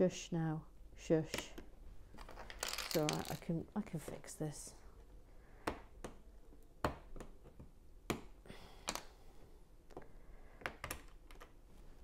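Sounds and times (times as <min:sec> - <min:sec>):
plastic bricks clicking: 0:02.2 - 0:03.5.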